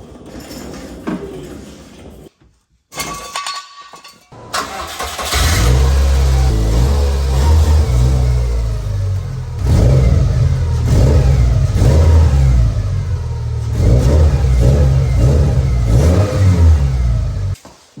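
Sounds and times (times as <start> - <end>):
car engine revving: 4.6 - 17.6.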